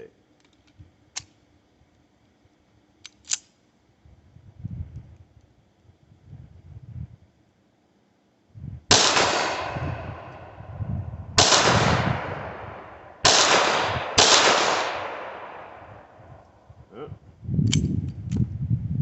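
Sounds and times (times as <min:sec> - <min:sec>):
pistol shots with echo: 0:08.9 - 0:10.6, 0:11.4 - 0:16.2.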